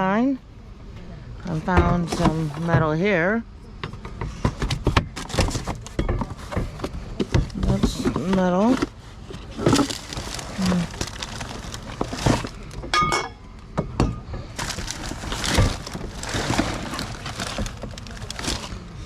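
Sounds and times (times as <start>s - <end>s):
rustling and scraping: 1.8s - 3.0s, 4.3s - 12.9s, 14.4s - 19.0s.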